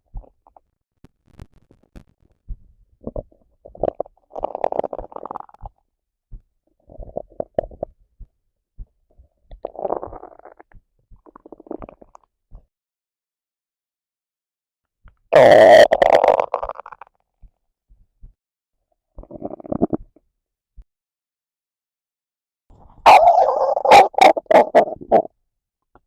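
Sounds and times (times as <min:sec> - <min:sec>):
stomach growling and gurgling: 0:00.0 - 0:12.7, 0:15.1 - 0:17.6, 0:19.1 - 0:20.3, 0:22.7 - 0:25.4.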